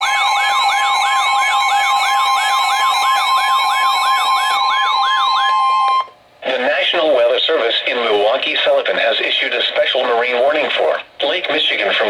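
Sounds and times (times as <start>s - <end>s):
sweeping siren-like tone: 0.0s - 6.1s
steady attention tone: 0.0s - 6.9s.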